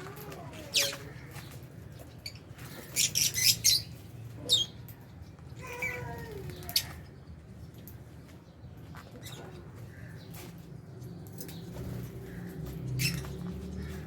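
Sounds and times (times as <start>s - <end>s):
birds chirping faintly: 0.0s - 14.0s.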